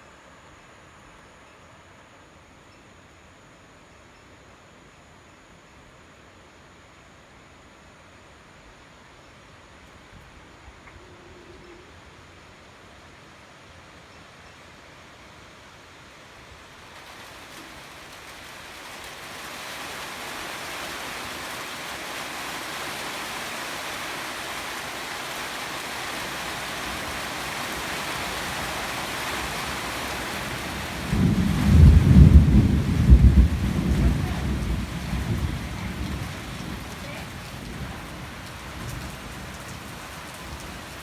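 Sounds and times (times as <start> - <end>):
heavy rain downpour: 15.3 - 41.0.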